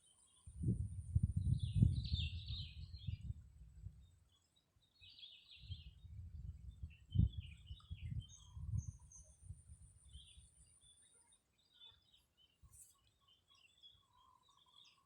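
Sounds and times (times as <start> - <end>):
small birds chirping: 0.0 - 15.0
wind rumbling on microphone: 0.4 - 4.1, 5.6 - 10.6.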